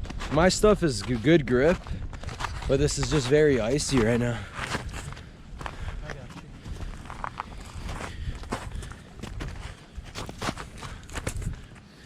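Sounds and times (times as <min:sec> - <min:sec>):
footsteps crunching on ice: 0:00.0 - 0:11.8.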